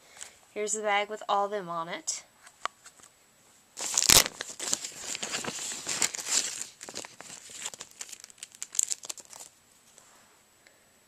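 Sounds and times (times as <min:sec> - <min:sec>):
plastic packaging crumpling: 0:03.8 - 0:09.6.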